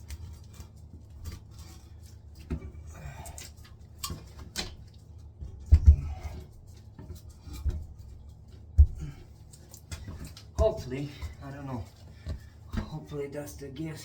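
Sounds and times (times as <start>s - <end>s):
clicks and knocks of toilet fitting: 2.4s - 11.4s.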